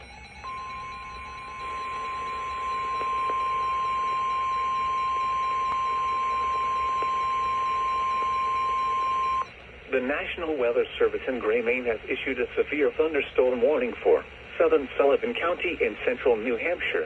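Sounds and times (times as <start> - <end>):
emergency alert tone: 0.0 - 9.5
faint radio hiss: 0.0 - 17.0.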